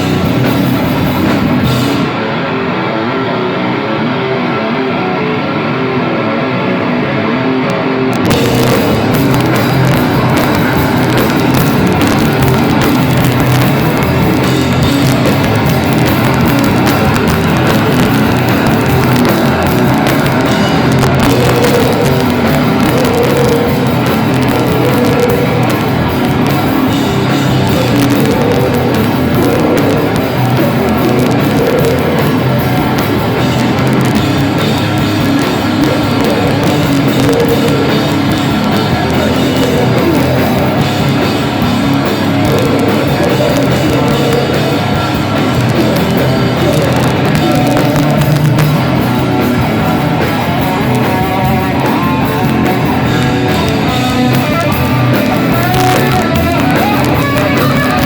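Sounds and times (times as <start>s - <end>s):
heavy metal band playing live: 0.0s - 58.0s.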